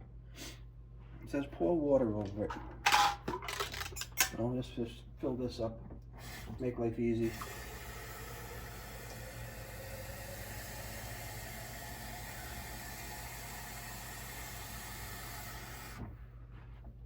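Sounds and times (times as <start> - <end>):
tap water running into jar: 7.2 - 15.6.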